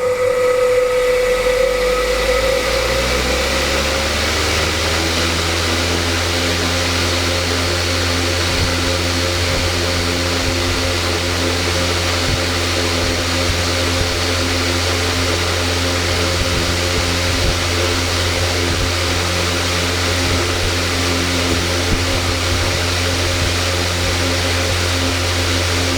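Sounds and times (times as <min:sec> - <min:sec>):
electric fan motor hum: 0:00.0 - 0:25.9.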